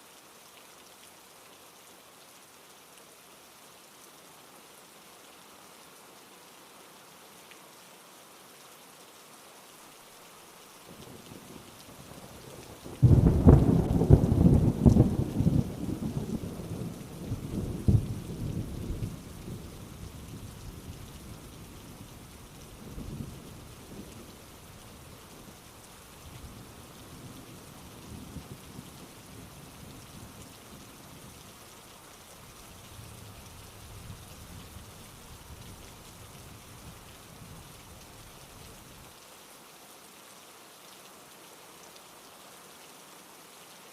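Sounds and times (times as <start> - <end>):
steady rain: 0.0 - 43.9
faint thunder rumbles: 10.9 - 25.6, 26.3 - 31.4.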